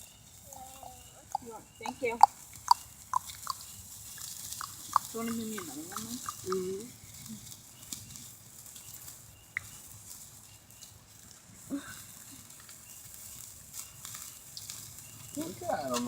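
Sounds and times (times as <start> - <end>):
faint clicks: 1.3 - 9.8.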